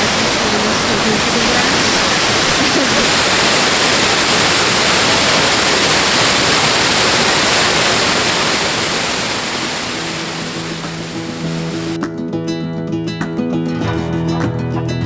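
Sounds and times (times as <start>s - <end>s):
waterfall roaring: 0.0s - 12.0s.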